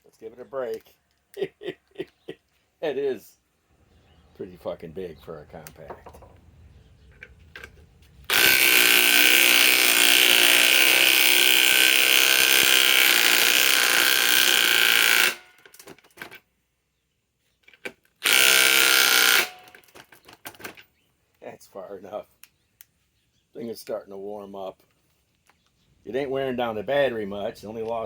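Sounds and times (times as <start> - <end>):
impact wrench hammering: 8.3 - 15.7, 18.2 - 19.9.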